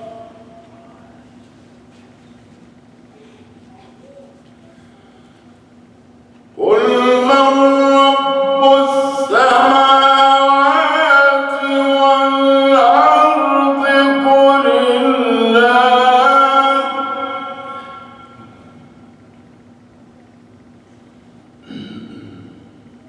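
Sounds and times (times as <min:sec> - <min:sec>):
man chanting melodically: 0:00.0 - 0:01.2, 0:06.6 - 0:19.0.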